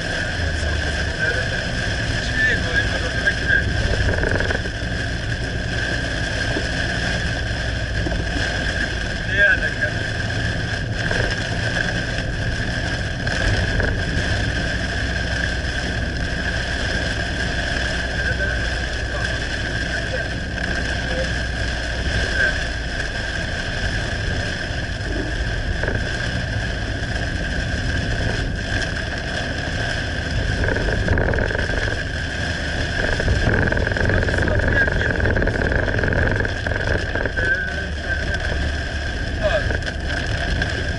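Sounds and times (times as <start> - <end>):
car engine: 0.0 - 40.9
road noise: 0.0 - 40.9
wind noise: 3.4 - 9.3, 10.2 - 17.8, 21.7 - 40.9.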